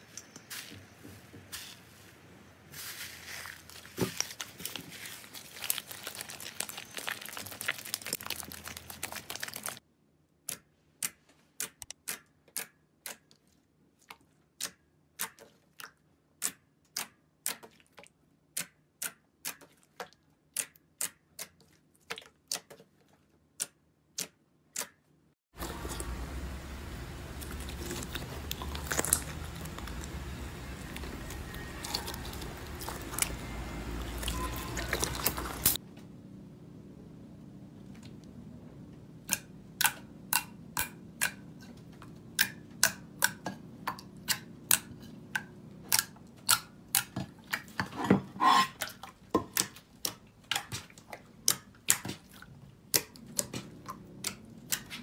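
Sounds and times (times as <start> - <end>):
crunchy slime crackling: 2.8 - 9.8, 27.3 - 35.8.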